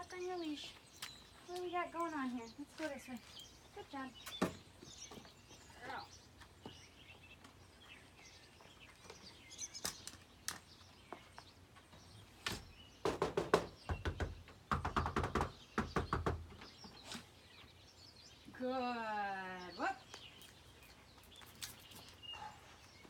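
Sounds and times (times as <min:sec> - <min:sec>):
faint bird chirps: 0:19.7 - 0:23.0.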